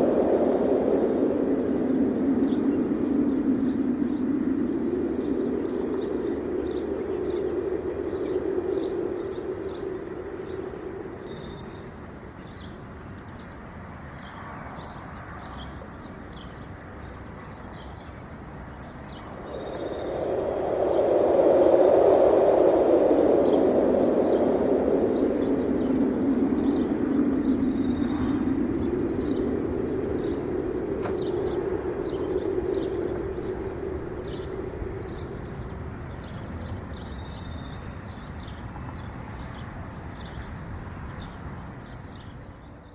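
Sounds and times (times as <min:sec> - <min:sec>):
small birds chirping: 0:00.0 - 0:42.9
wind gusting: 0:00.0 - 0:42.9.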